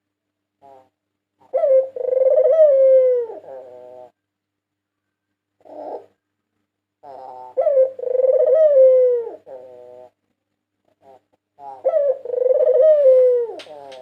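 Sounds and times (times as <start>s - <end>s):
dove cooing: 0.6s - 4.2s, 5.6s - 6.2s, 7.0s - 10.2s, 10.9s - 14.0s.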